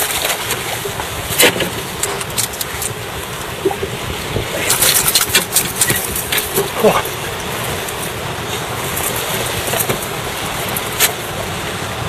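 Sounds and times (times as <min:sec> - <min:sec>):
sea surf: 0:00.0 - 0:12.0
wind: 0:00.0 - 0:12.0.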